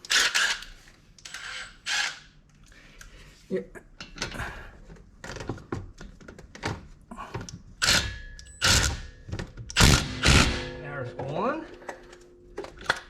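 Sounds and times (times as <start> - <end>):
impact wrench bursts: 7.8 - 9.1, 9.8 - 10.7.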